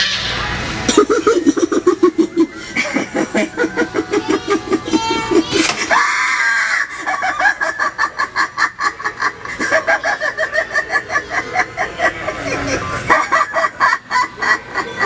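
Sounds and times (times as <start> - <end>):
fast pulsing chatter: 6.7 - 15.0.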